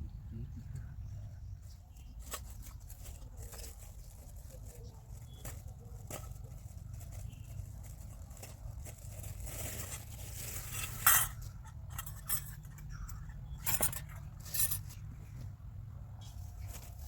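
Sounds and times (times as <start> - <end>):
objects clinking and knocking: 9.8 - 15.0.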